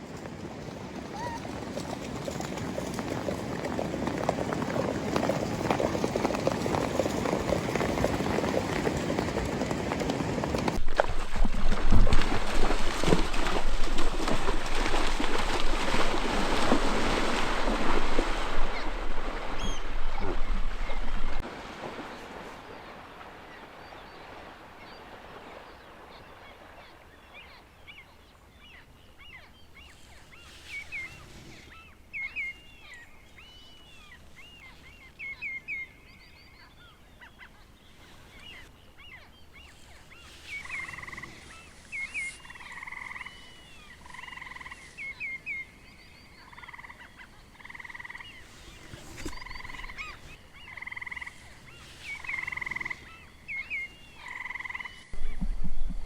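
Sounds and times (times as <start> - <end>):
frogs chirping in chorus: 39.0 - 48.7, 49.3 - 55.1
frog croaks: 50.7 - 51.4, 54.2 - 55.0.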